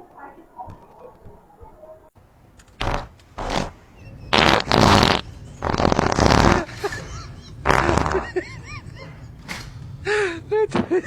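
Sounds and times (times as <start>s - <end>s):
farts: 2.7s - 8.7s, 10.7s - 11.0s.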